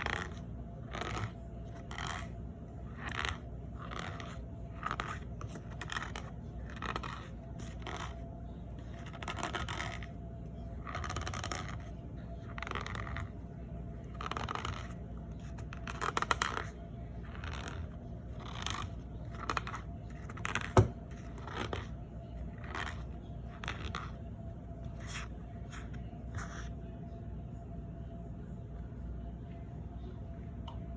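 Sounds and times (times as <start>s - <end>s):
cornstarch squeaking and crunching: 0.0s - 13.4s, 14.0s - 24.2s.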